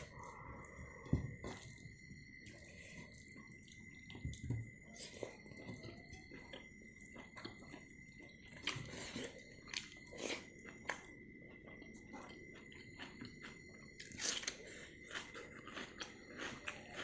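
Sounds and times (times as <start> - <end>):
person chewing food: 0.0 - 17.0
crunchy bites: 13.0 - 17.0.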